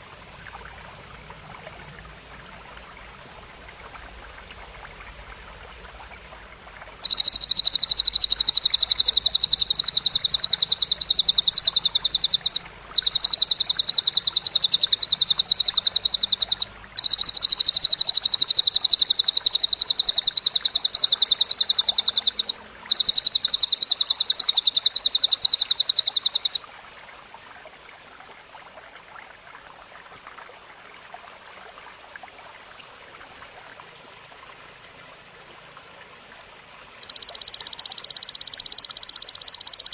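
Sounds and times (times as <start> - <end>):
stream and insect ambience: 0.0 - 39.9
grasshopper buzzing trills: 7.0 - 26.6.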